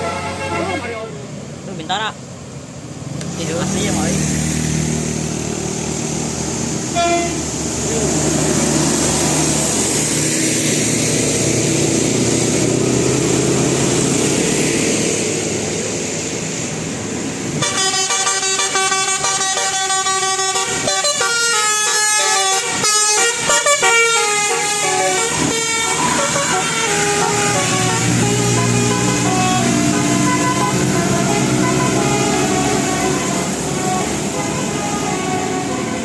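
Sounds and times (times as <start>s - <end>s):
bus engine and road noise: 0.0s - 36.0s
musical air horn tune: 6.9s - 7.5s, 17.6s - 36.0s.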